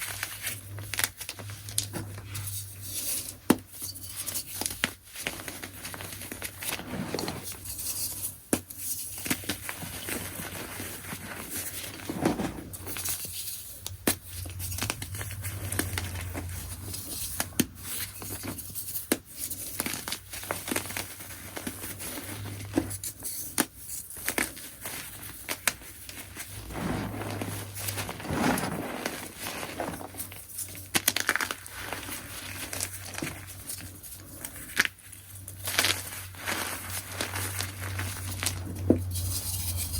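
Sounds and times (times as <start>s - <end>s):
chalk crunching and cracking: 9.1s - 39.9s.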